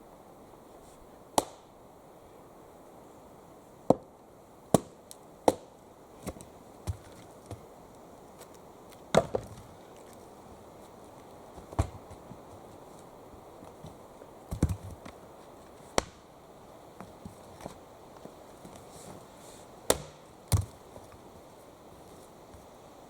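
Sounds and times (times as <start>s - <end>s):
axe chopping wood: 1.4s - 1.6s, 4.7s - 7.6s, 9.1s - 9.6s, 16.0s - 16.2s, 19.9s - 20.8s.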